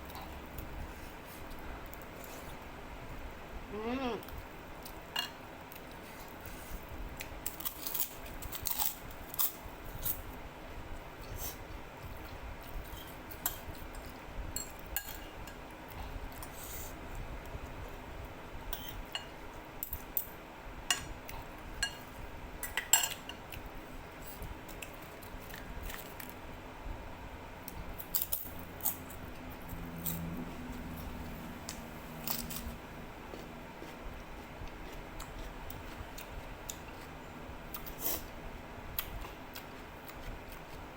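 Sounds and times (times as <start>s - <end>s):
electric fan humming: 0.0s - 40.9s
cutlery clinking against a bowl: 4.9s - 5.4s, 12.9s - 15.7s, 18.7s - 20.3s, 20.9s - 21.2s, 21.8s - 23.6s.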